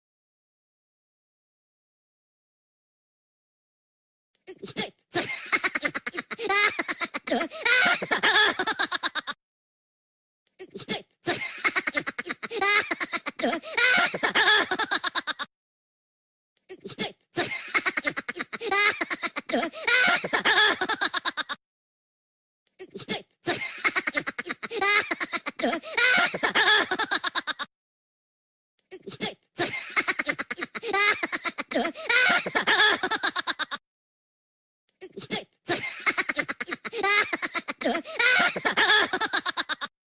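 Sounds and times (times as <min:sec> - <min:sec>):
cartoon voices laughing: 0:05.2 - 0:09.4, 0:11.3 - 0:15.5, 0:17.4 - 0:21.6, 0:23.5 - 0:27.7, 0:29.6 - 0:33.8, 0:35.0 - 0:39.9.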